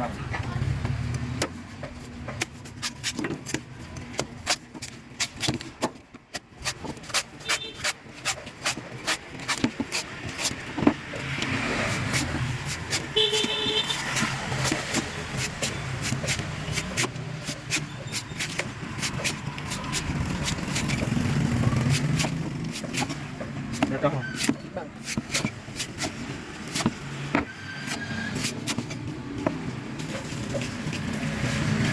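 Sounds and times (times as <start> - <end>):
road traffic: 0.0 - 31.9
blade cutting coconut: 1.2 - 31.9
car horn toots: 13.1 - 14.1.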